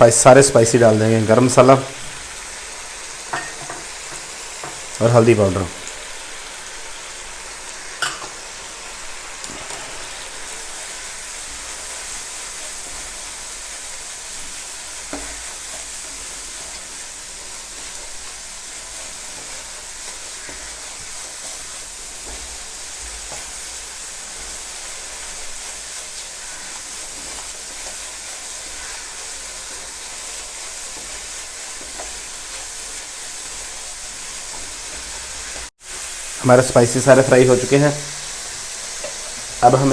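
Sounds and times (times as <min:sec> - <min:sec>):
food sizzling in a pan: 0:00.0 - 0:39.9.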